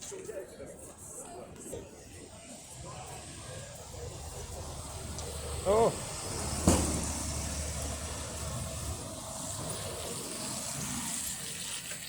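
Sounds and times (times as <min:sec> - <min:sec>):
outdoor traffic noise: 0:00.0 - 0:12.0
sharp knock: 0:06.6 - 0:07.1.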